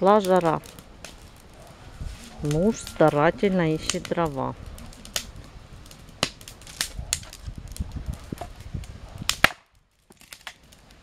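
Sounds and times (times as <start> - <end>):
wood fire crackling: 0.0 - 11.0
low rumble: 0.7 - 9.3.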